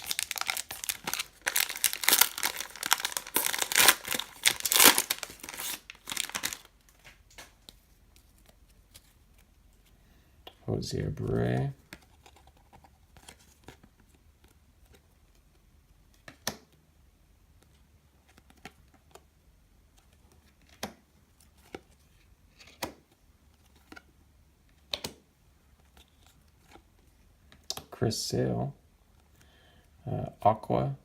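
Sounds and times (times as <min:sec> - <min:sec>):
faint room noise: 0:00.0 - 0:31.0.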